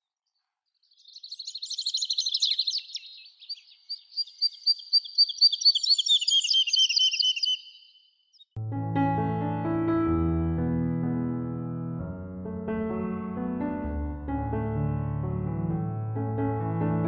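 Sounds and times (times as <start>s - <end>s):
songbird singing: 0.0s - 8.6s.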